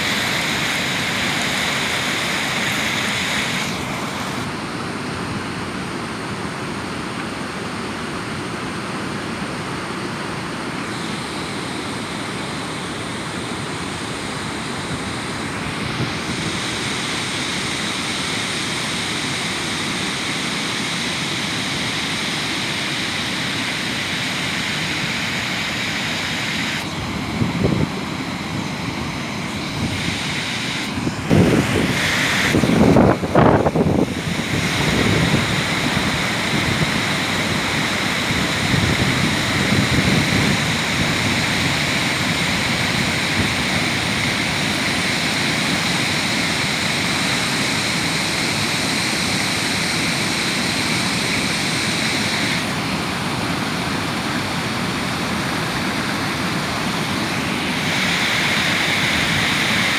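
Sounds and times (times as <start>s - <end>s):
waterfall rushing: 0.0s - 4.9s, 11.0s - 59.9s
wind buffeting microphone: 26.7s - 44.8s.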